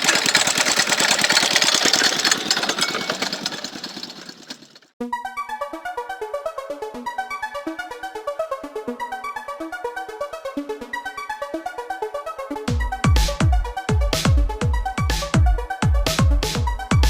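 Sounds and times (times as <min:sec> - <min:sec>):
machine engine running: 0:00.0 - 0:04.9.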